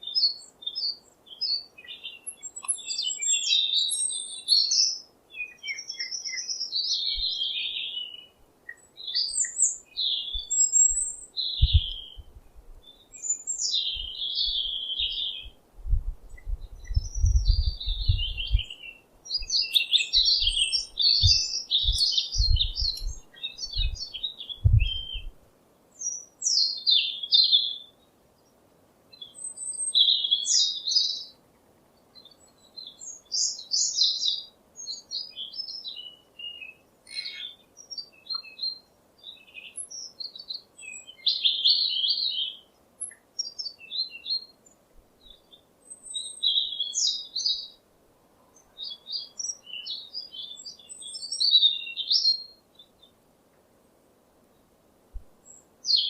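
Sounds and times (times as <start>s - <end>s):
songbird chirping: 0.0s - 56.0s.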